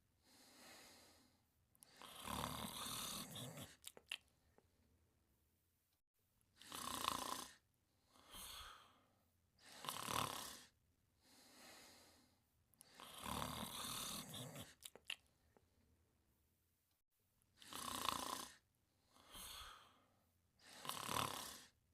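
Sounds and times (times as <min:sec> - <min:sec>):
soft breaths: 0:00.2 - 0:04.7, 0:07.5 - 0:15.8, 0:18.5 - 0:21.8
person snoring: 0:01.8 - 0:04.0, 0:06.6 - 0:09.0, 0:09.6 - 0:10.8, 0:12.8 - 0:15.0, 0:17.6 - 0:18.6, 0:19.2 - 0:20.0, 0:20.6 - 0:21.8.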